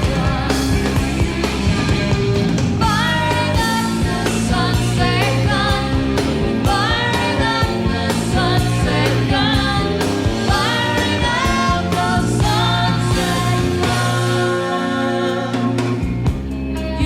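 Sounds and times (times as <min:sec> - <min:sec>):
woman singing lead vocal: 0:00.0 - 0:01.4, 0:02.8 - 0:16.1, 0:16.8 - 0:17.0
live band playing: 0:00.0 - 0:17.0.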